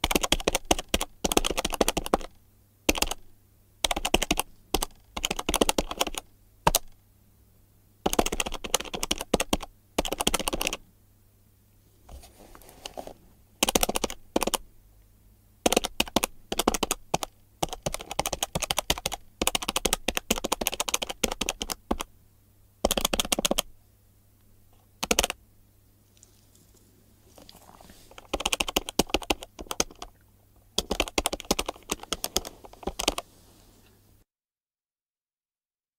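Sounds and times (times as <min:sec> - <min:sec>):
faint steady hum: 0:00.0 - 0:34.3
calculator buttons clicking: 0:02.9 - 0:03.2, 0:08.1 - 0:10.8, 0:13.6 - 0:14.6, 0:15.7 - 0:22.1, 0:22.9 - 0:23.6, 0:28.2 - 0:30.0, 0:30.8 - 0:33.2.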